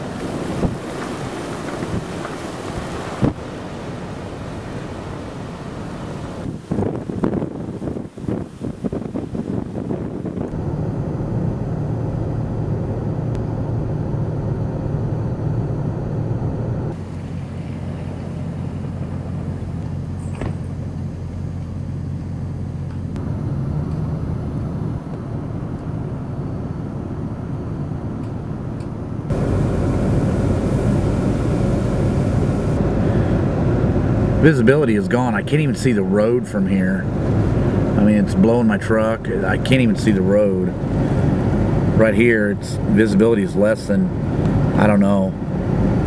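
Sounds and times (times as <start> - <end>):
wind noise: 0.0 - 17.3, 23.2 - 46.0
truck engine hum: 0.0 - 46.0.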